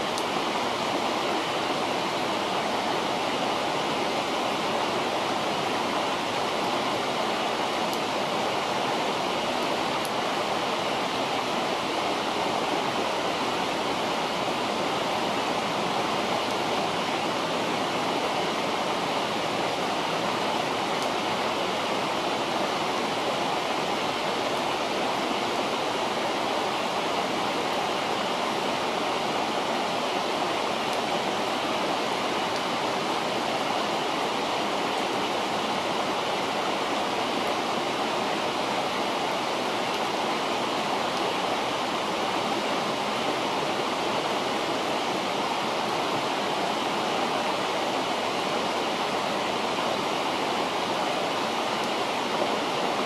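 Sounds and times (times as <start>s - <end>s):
campfire crackling: 0.0s - 25.0s
river water flowing: 0.0s - 53.0s.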